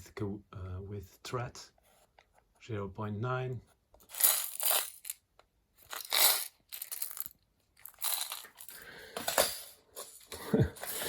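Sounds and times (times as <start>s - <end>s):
small metal parts clinking: 4.0s - 5.2s, 5.8s - 11.0s
packaging rustling: 5.8s - 11.0s.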